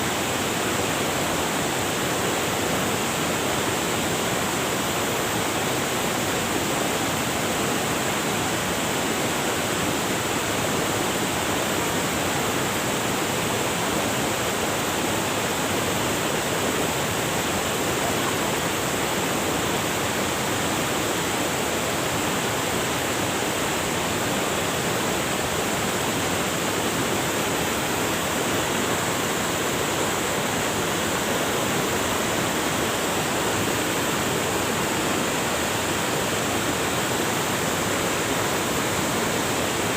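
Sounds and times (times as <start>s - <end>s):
river water rushing over rocks: 0.0s - 39.9s.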